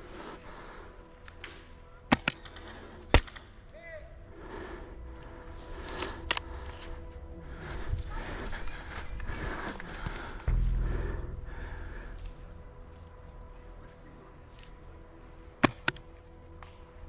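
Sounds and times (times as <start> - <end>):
airsoft gun cracks: 2.2 - 3.6.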